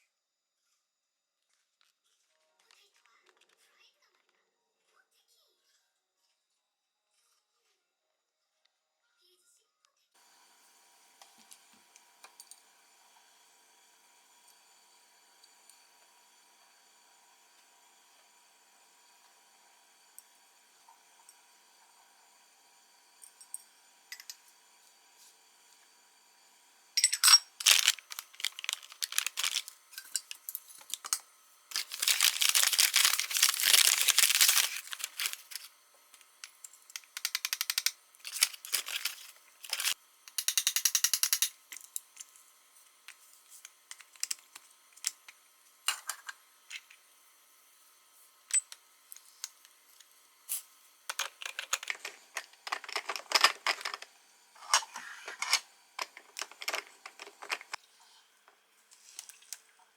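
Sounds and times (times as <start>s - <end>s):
rustling: 31.7s - 35.7s.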